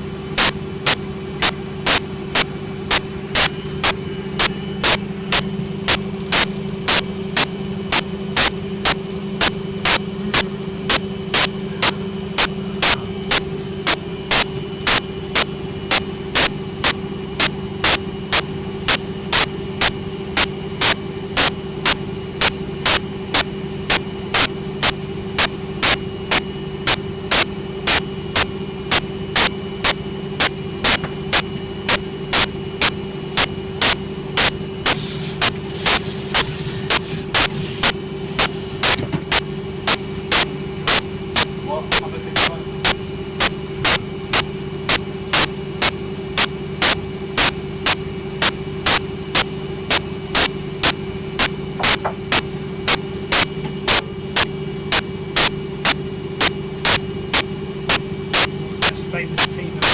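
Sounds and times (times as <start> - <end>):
washing machine motor hum: 0.0 - 59.9.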